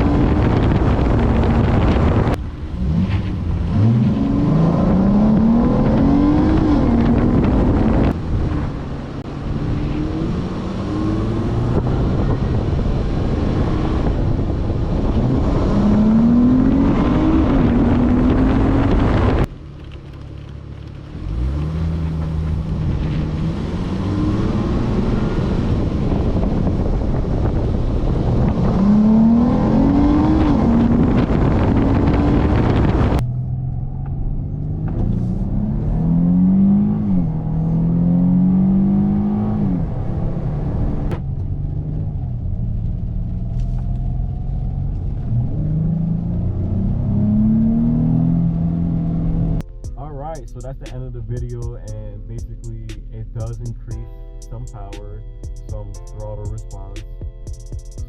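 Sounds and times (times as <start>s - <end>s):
car engine accelerating hard: 0.0s - 57.0s.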